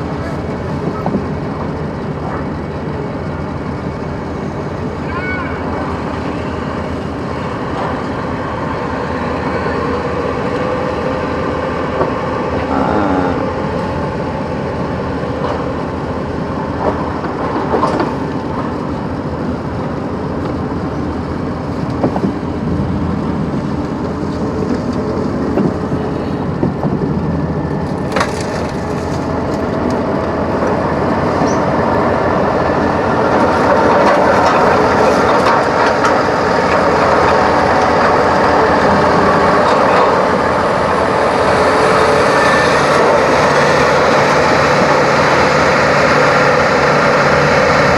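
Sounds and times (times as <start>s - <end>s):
vehicle engine: 0.0s - 47.9s
yard machinery noise: 0.0s - 47.9s
sharp knocks and crunches: 27.9s - 29.8s.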